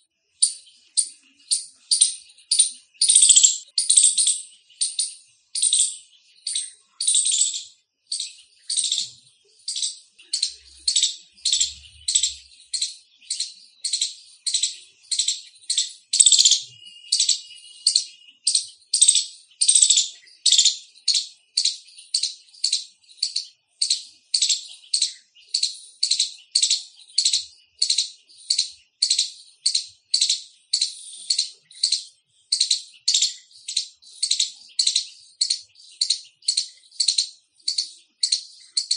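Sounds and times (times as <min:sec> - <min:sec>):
squirrel chirping call: 0:00.0 - 0:38.9.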